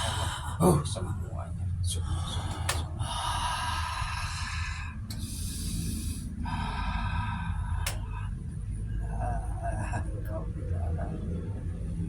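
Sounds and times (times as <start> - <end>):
person breathing heavily: 0.0 - 0.9, 1.9 - 10.2.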